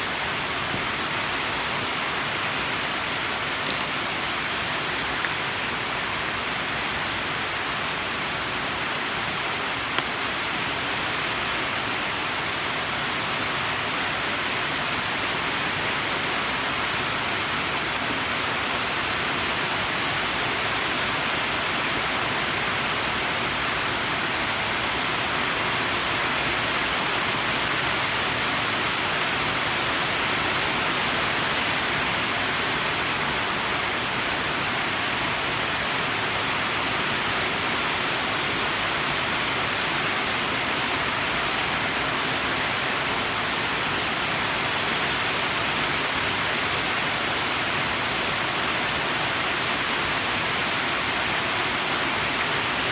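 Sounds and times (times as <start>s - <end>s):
steady hiss: 0.0s - 52.9s
brief click: 3.6s - 4.0s.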